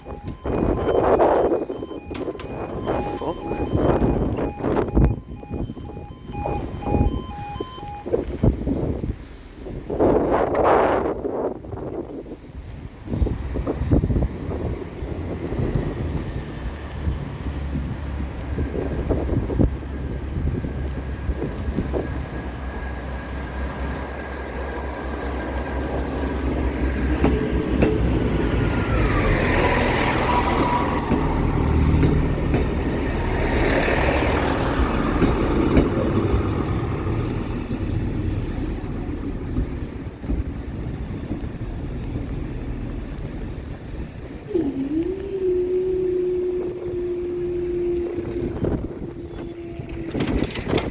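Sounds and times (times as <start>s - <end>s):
train whine dropping in pitch: 0.0s - 8.6s, 20.8s - 41.4s, 43.8s - 50.8s
train rumbling past: 0.0s - 50.9s.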